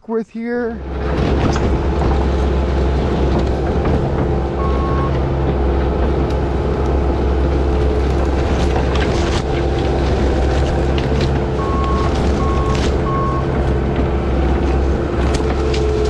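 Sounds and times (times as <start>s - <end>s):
diesel engine running: 0.6s - 16.0s
clanks: 0.9s - 16.0s
short beep: 4.6s - 5.2s.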